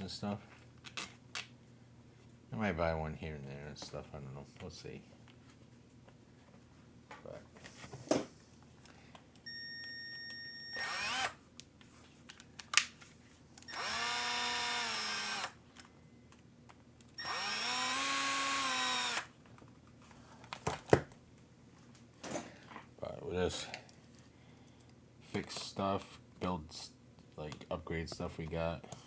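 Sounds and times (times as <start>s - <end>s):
power drill spinning: 10.7s - 11.4s, 13.7s - 15.6s, 17.2s - 19.3s.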